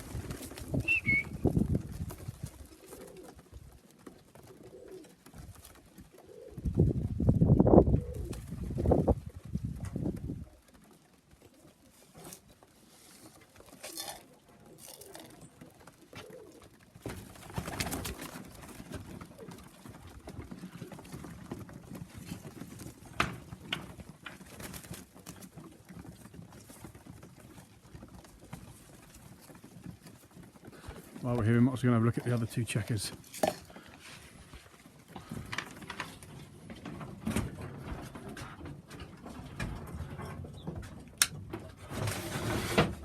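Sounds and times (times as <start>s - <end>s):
pigeons cooing: 0.0s - 31.3s.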